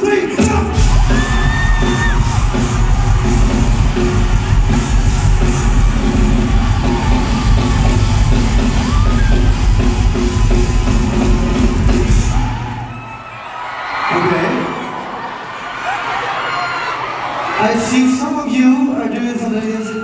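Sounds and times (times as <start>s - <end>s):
live rock band playing: 0.0s - 12.8s
crowd yelling: 0.0s - 18.3s.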